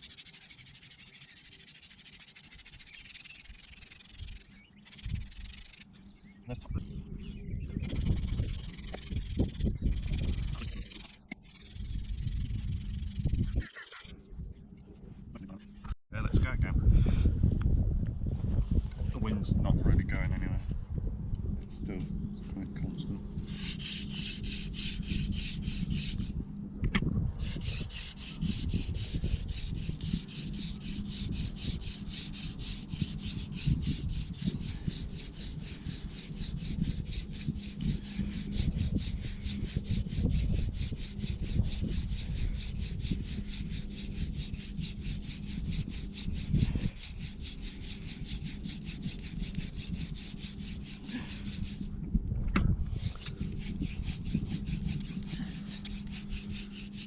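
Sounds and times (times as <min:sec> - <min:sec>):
wooden spindle rubbing on wood: 0:00.0 - 0:05.9, 0:07.6 - 0:14.2, 0:23.4 - 0:26.4, 0:27.4 - 0:52.0, 0:52.9 - 0:57.0.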